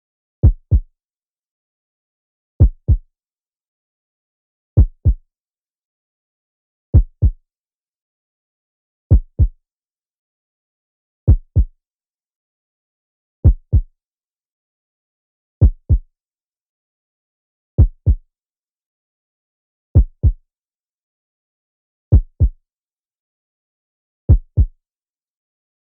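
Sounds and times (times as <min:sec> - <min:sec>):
heartbeat double thumps: 0:00.4 - 0:00.9, 0:02.6 - 0:03.0, 0:04.8 - 0:05.2, 0:07.0 - 0:07.4, 0:09.1 - 0:09.6, 0:11.3 - 0:11.7, 0:13.4 - 0:13.9, 0:15.6 - 0:16.0, 0:17.8 - 0:18.2, 0:20.0 - 0:20.4, 0:22.1 - 0:22.6, 0:24.3 - 0:24.7.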